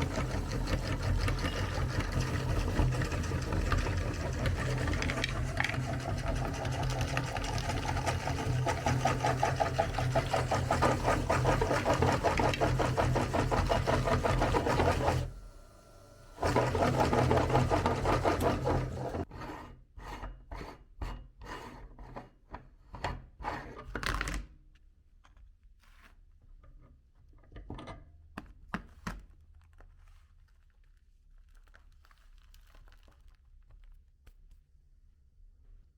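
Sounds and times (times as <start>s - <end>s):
electric meat grinder motor: 0.0s - 19.3s.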